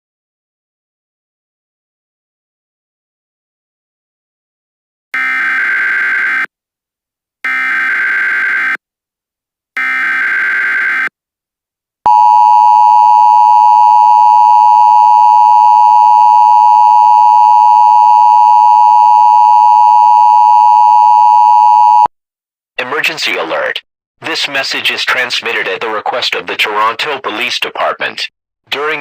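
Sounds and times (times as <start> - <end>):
two-tone alert tone: 12.1 - 22.1.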